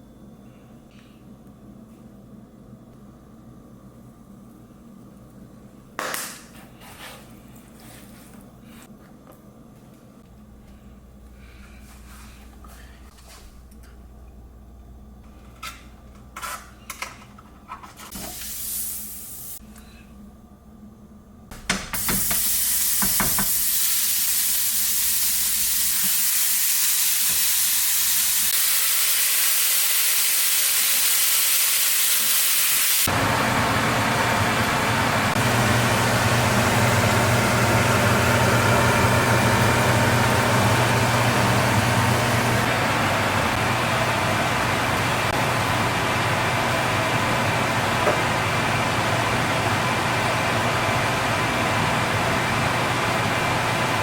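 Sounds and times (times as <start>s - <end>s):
food sizzling in a hot pan: 22.0s - 33.0s.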